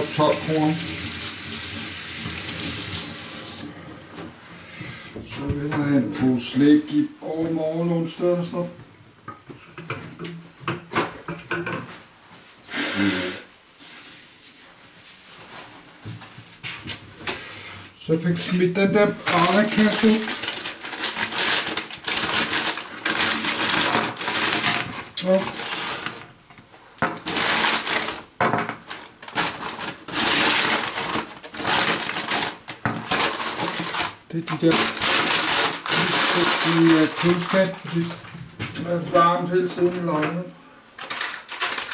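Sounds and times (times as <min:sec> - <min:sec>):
packaging crinkling: 0:19.0 - 0:26.4, 0:27.0 - 0:38.3, 0:41.0 - 0:41.9.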